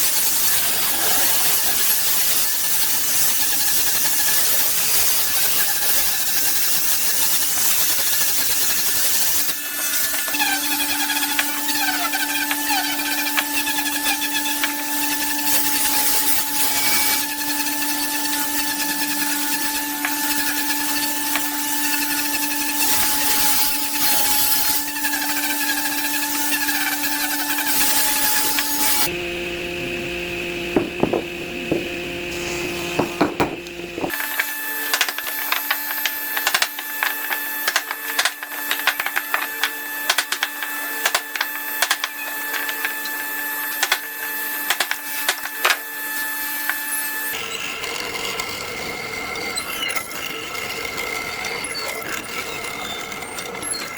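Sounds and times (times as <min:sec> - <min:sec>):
power tool motor whine: 0:00.0 - 0:53.9
sharp clicks and knocks: 0:30.8 - 0:32.0, 0:33.0 - 0:45.9
rasping on wood: 0:30.8 - 0:45.8.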